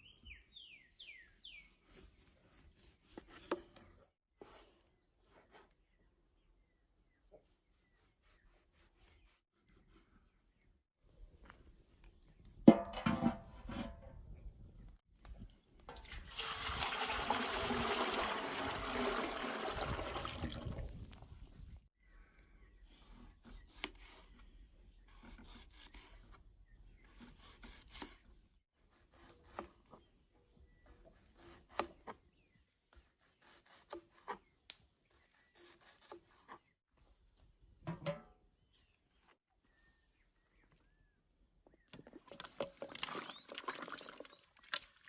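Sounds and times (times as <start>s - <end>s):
liquid pouring: 15.9s - 21.0s.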